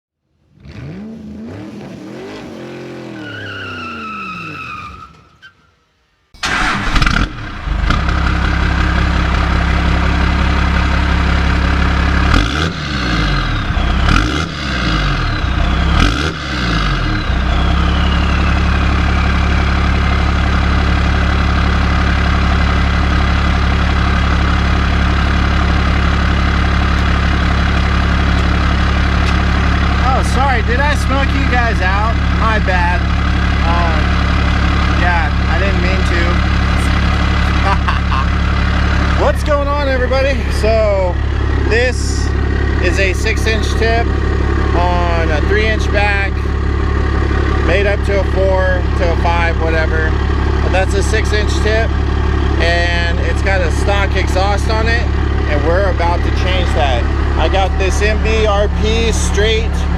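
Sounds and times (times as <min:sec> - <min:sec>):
diesel engine revving and idling: 0:00.4 - 0:05.1, 0:06.4 - 0:59.9
turbo whistle: 0:17.1 - 0:19.9.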